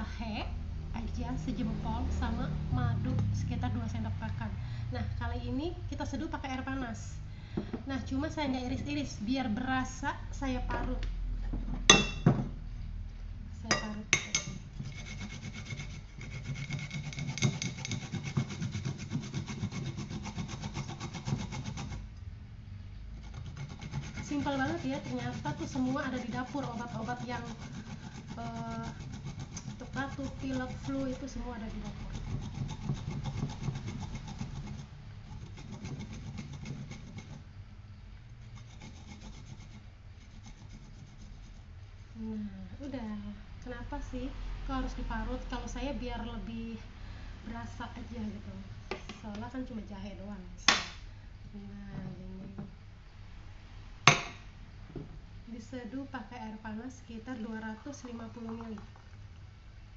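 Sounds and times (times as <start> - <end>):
ginger rasping on a hand grater: 14.8 - 22.1, 23.2 - 37.4, 38.4 - 41.7
sharp knocks: 54.1 - 55.2.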